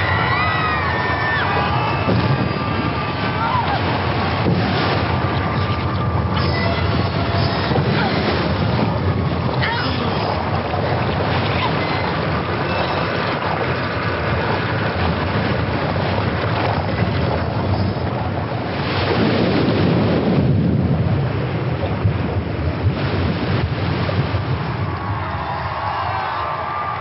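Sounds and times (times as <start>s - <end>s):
deep rumbling roar: 0.0s - 27.0s.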